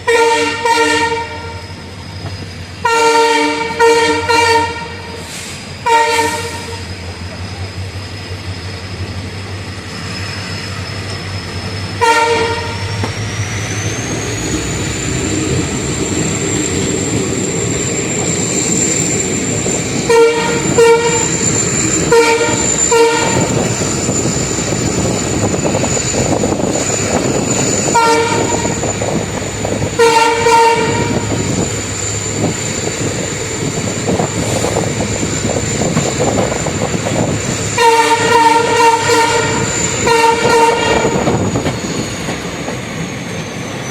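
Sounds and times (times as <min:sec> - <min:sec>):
locomotive horn blasts: 0:00.0 - 0:01.6, 0:02.8 - 0:05.2, 0:05.8 - 0:06.9, 0:12.0 - 0:13.1, 0:20.0 - 0:21.4, 0:22.0 - 0:23.6, 0:27.8 - 0:28.8, 0:30.0 - 0:31.3, 0:37.7 - 0:41.3
train rumbling on track: 0:00.0 - 0:43.9.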